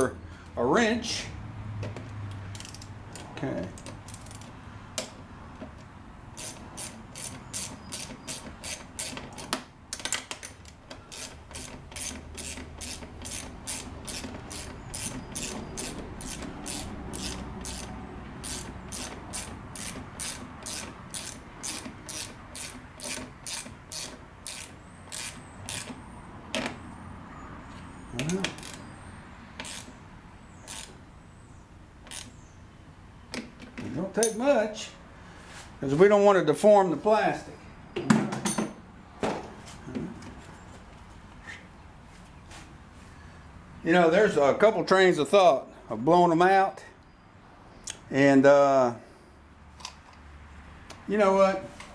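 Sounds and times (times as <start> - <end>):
socket ratchet clicking: 2.2 - 5.2, 6.4 - 26.0, 28.5 - 28.9, 29.6 - 30.0, 30.6 - 31.0, 32.0 - 32.4.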